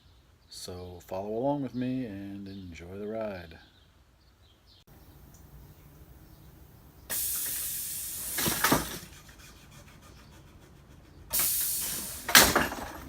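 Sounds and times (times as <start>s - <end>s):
bursts of hissing noise: 5.0s - 13.0s.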